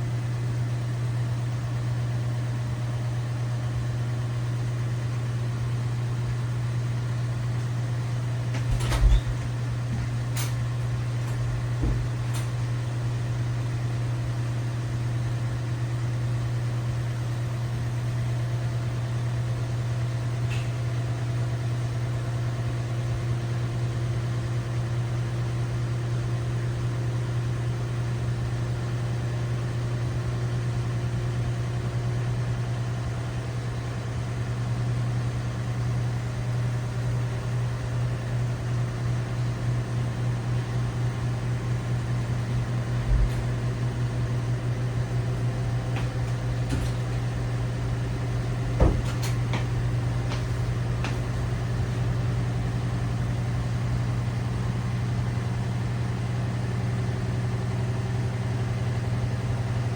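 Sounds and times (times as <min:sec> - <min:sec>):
washing machine humming: 0:00.0 - 0:59.9
single knock: 0:48.8 - 0:51.2.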